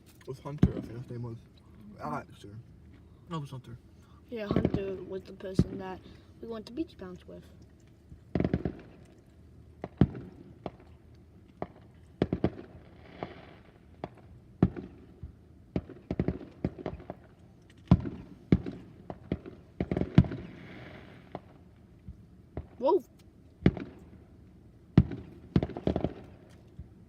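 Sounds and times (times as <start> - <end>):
crackling firework shells sizzling: 4.4 - 24.4, 25.0 - 27.0
fireworks bangs: 4.5 - 6.1, 8.3 - 9.0, 9.8 - 11.0, 11.6 - 21.6, 23.6 - 24.2, 24.9 - 26.5.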